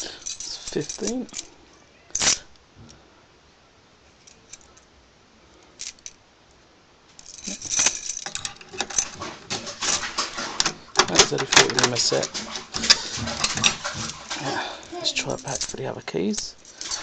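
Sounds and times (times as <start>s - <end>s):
metal keys jangling: 0.0s - 1.6s, 7.2s - 9.2s, 15.1s - 15.8s, 16.4s - 17.0s.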